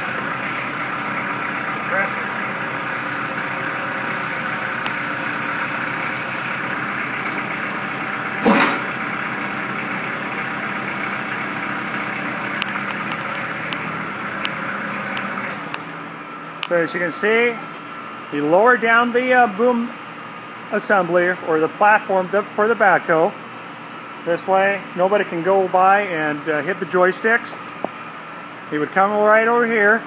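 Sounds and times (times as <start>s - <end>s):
tractor diesel engine idling: 0.0s - 19.4s.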